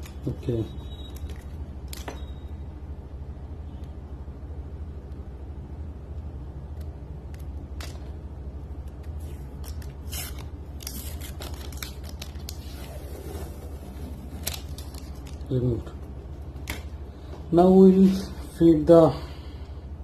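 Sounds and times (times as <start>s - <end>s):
steady low hum: 0.0s - 20.0s
sticky film peeling: 8.8s - 15.6s.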